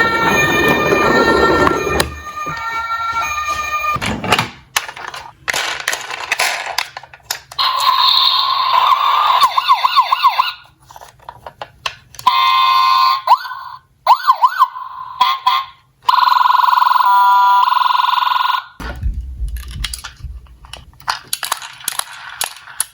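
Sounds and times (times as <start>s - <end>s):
toy emergency sirens: 0.0s - 4.0s, 7.5s - 10.7s, 12.2s - 18.8s
clicks and rattling: 4.0s - 7.6s, 18.8s - 22.9s.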